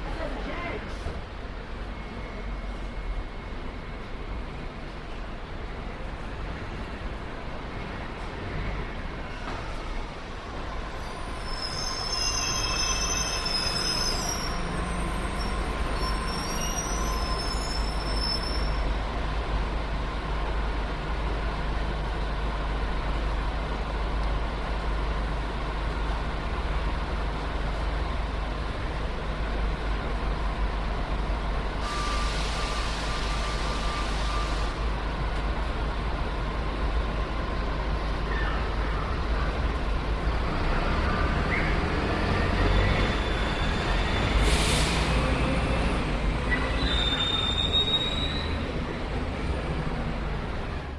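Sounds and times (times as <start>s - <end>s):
train rumble: 0.0s - 50.9s
brakes and wheels squealing: 8.0s - 19.1s, 31.8s - 35.1s, 38.1s - 49.6s
air brake hiss: 31.8s - 34.9s, 44.3s - 45.4s.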